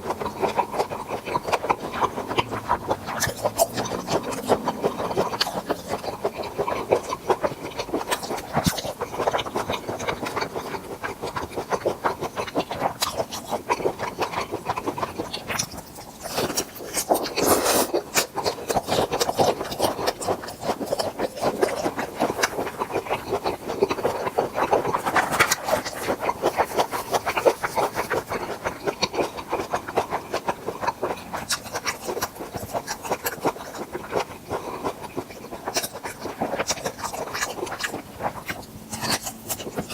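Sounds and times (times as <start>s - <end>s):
chewing crunchy food: 0.0s - 39.9s
wet mouth clicks: 0.0s - 39.9s.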